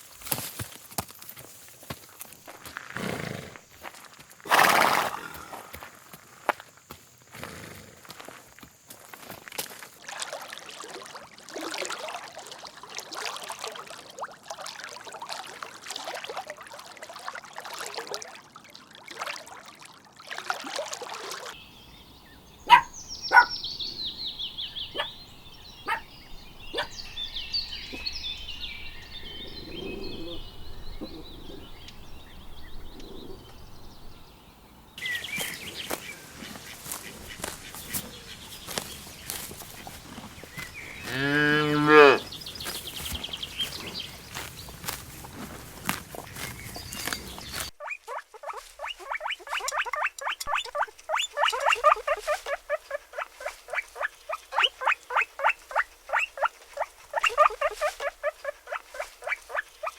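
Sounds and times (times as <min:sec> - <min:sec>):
scuffing and rustling: 0:00.0 - 0:03.0, 0:35.0 - 0:41.4, 0:42.2 - 0:47.8
high bird chirps: 0:21.6 - 0:34.2, 0:35.0 - 0:41.3, 0:46.4 - 0:59.9.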